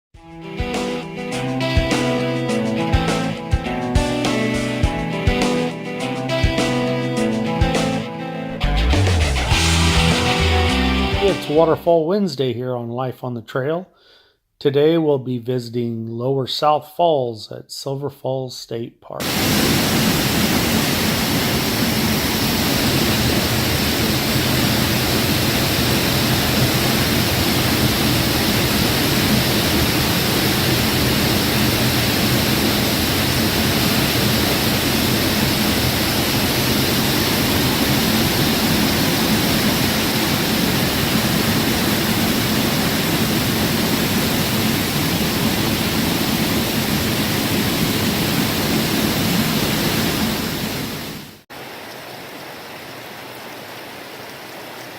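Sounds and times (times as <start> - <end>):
waterfall crashing into pool: 19.2 - 54.9.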